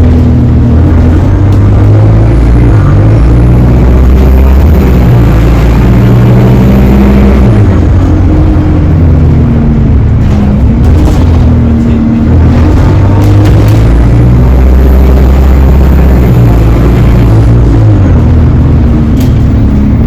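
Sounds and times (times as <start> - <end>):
bus diesel engine: 0.0 - 20.0
whining drive axle: 0.0 - 20.0.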